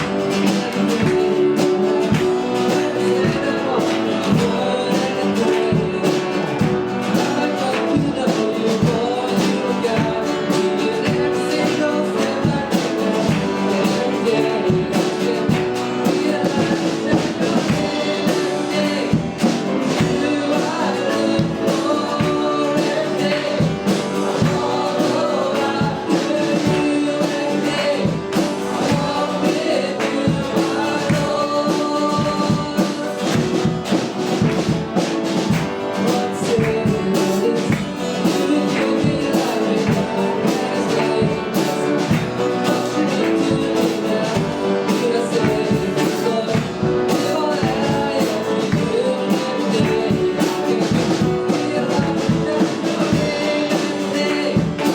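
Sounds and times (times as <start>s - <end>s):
band playing worship song: 0.0s - 54.9s
people singing along: 0.0s - 54.9s.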